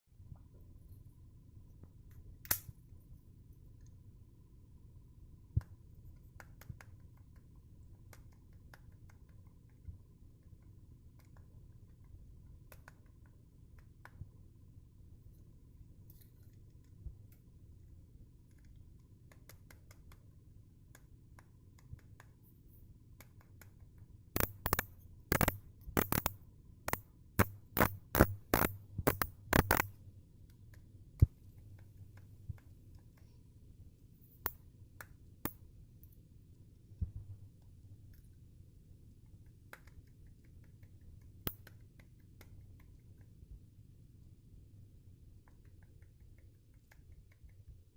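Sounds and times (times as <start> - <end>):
faint reel clicks: 23.2 - 30.0
sharp knocks inside reel: 24.4 - 30.0.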